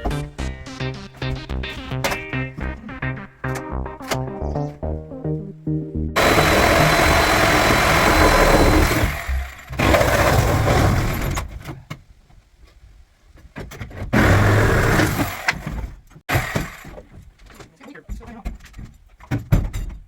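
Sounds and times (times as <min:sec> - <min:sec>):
motorized tool running loud: 0:06.2 - 0:10.2.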